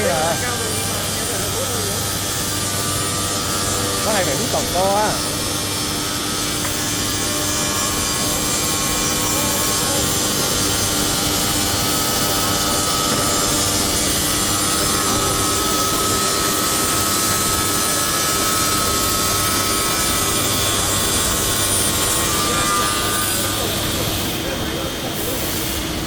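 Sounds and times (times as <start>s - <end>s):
router spindle running with whine: 0.0s - 26.0s.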